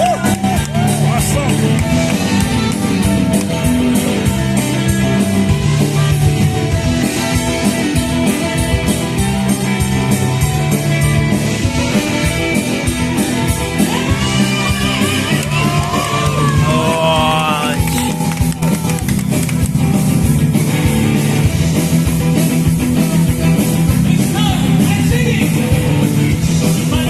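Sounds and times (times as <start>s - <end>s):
guitar music with beat: 0.0s - 27.0s
person singing: 13.9s - 18.2s.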